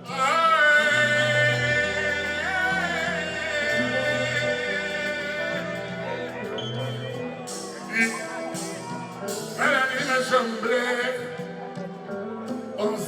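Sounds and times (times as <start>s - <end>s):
bass line: 0.0s - 10.1s
live band playing rumba: 0.0s - 13.0s
voice holding long sung note: 0.0s - 13.0s.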